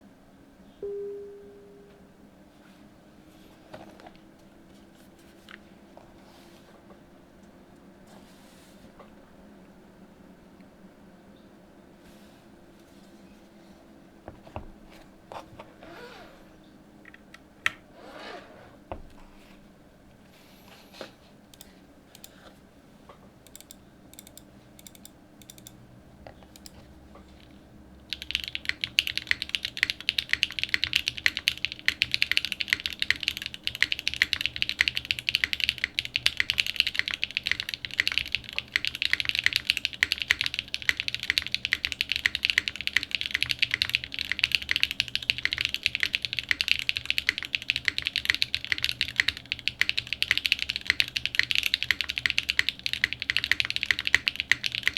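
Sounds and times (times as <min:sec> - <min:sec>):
mechanical keyboard typing: 0:23.4 - 0:25.8, 0:27.4 - 0:54.9.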